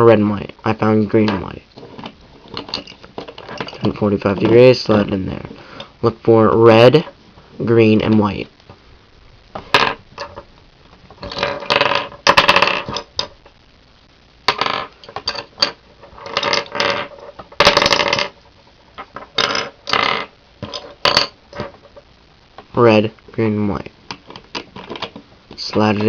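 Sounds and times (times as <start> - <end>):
plastic pieces clattering: 1.8 - 4.7.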